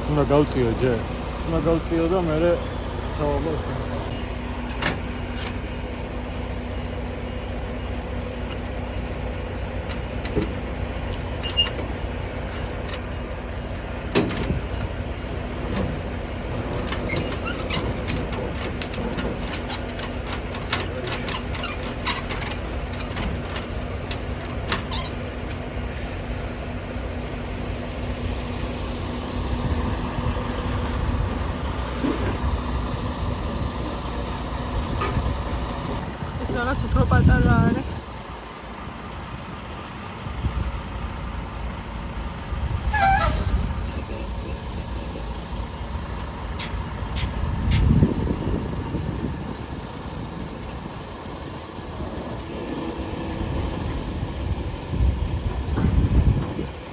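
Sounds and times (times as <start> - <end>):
diesel truck engine rumbling: 0.0 - 56.9
sharp clicks and knocks: 16.6 - 25.2.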